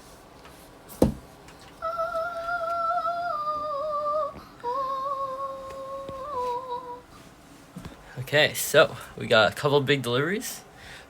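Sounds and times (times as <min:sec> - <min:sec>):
person humming: 0:01.8 - 0:07.1.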